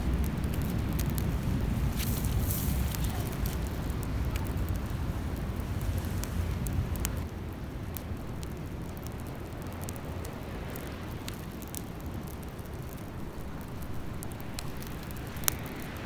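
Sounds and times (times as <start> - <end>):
heavy low rumble: 0.0 - 8.7
campfire crackling: 0.0 - 16.0.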